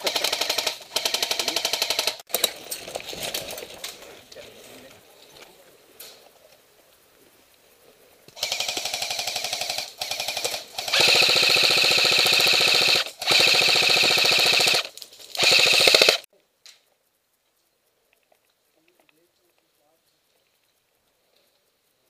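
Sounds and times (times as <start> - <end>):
airsoft rifle automatic fire: 0.0 - 2.6, 8.4 - 16.3.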